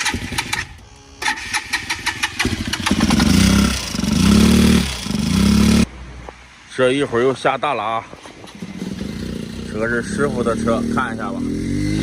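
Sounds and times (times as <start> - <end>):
motorcycle engine cranking: 0.0 - 5.2, 8.2 - 9.6
motorcycle engine revving: 0.0 - 5.9, 8.2 - 12.0.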